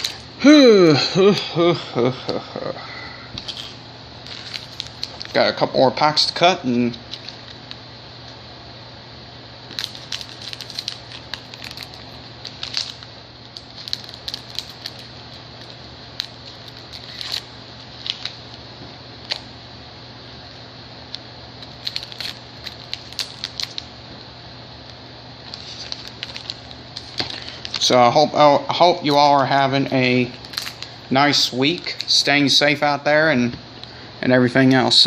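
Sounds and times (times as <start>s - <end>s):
foil wrappers crinkling: 0.0s - 0.3s, 3.4s - 5.6s, 7.0s - 7.8s, 9.7s - 18.6s, 19.2s - 19.5s, 21.6s - 23.9s, 24.9s - 28.0s, 29.1s - 32.6s
steady low hum: 0.0s - 35.0s.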